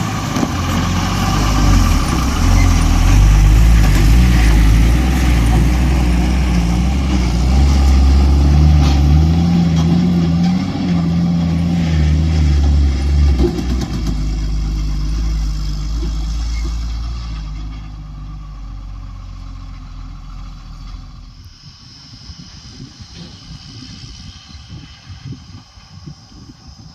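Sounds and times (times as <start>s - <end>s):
heavy diesel engine running: 0.0s - 26.6s.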